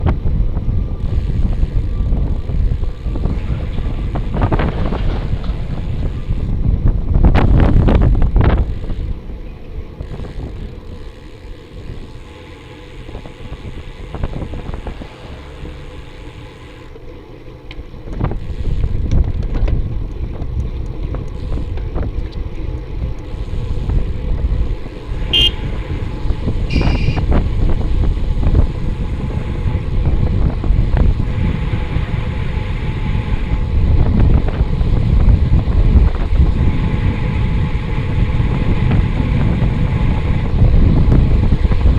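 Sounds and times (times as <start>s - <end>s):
wind buffeting microphone: 0.0s - 41.9s
car horn honks: 25.2s - 25.9s, 26.7s - 27.3s.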